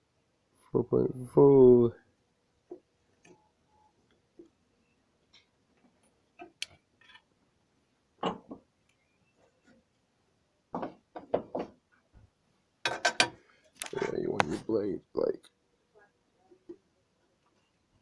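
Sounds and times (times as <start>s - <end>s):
clicks and knocks on wooden parts: 10.7s - 12.0s, 12.8s - 14.0s.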